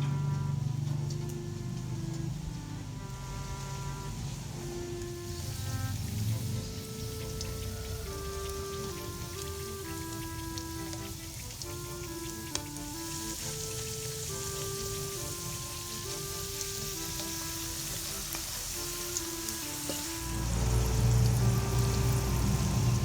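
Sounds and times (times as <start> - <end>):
simple background tune: 0.0 - 23.0
food sizzling in hot oil: 5.4 - 23.0
low rumble: 20.3 - 23.0.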